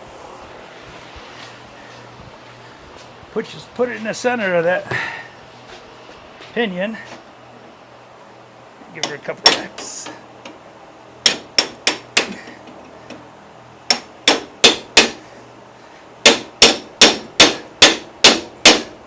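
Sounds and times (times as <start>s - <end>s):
hammer striking steel punch: 9.0s - 9.8s, 11.2s - 12.5s, 13.9s - 15.2s, 16.2s - 19.0s.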